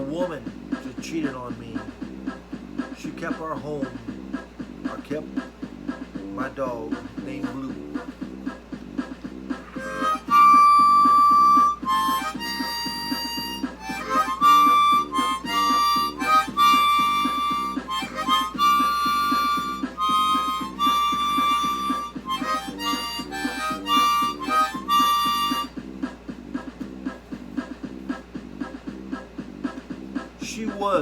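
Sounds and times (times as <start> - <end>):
repeating backing pulse: 0.0 - 31.0
reedy lead melody: 9.5 - 25.8.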